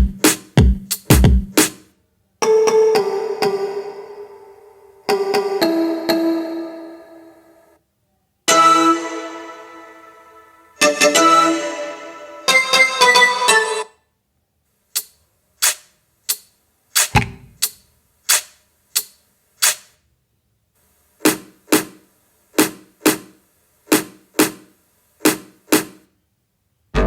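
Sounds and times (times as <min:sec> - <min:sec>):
kick drum thump: 0:00.0 - 0:01.5, 0:17.1 - 0:17.6
cracking percussion strokes: 0:15.0 - 0:20.0.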